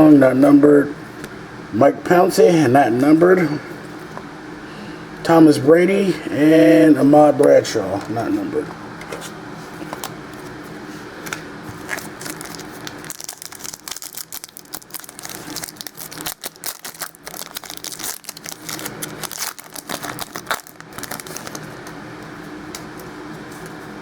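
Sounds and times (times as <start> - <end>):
cards being handled: 9.1 - 21.7
card pack wrapper tearing and crinkling: 11.7 - 21.7.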